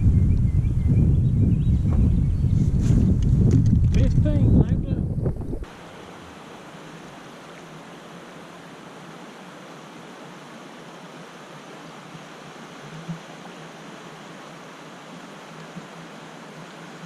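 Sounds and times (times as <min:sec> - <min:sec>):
steady rushing noise: 0:00.0 - 0:06.6.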